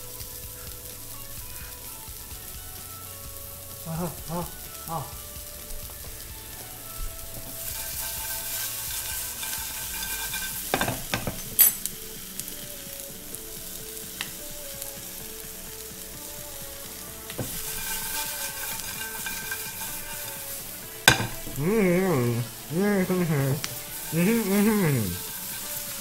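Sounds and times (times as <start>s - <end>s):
food sizzling in a frying pan: 0.0s - 26.0s
utensil clinking against pan: 7.5s - 11.8s, 17.4s - 21.6s.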